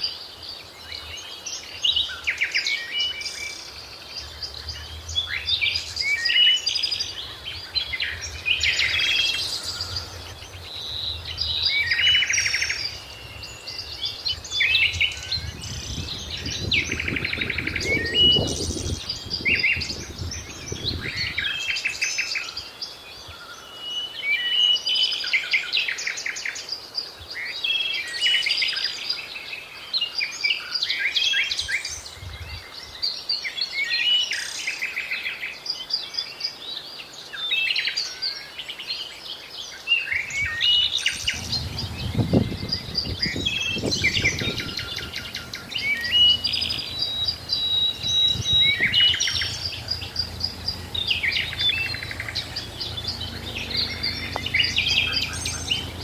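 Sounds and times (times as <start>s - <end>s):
birds chirping and trilling: 0.0s - 56.0s
low rumble: 41.0s - 56.0s.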